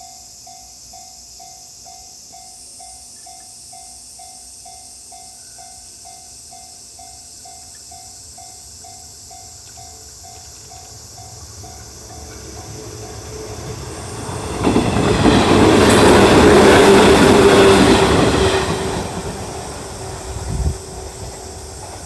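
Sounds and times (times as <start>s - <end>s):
level crossing warning bell: 0.0s - 13.8s
insects hissing: 0.0s - 22.0s
train rumble: 8.2s - 22.0s.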